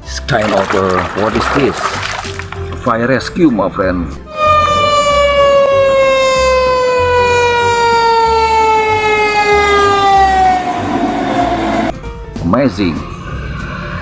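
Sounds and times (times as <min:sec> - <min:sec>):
fire engine siren descending: 0:04.3 - 0:12.0.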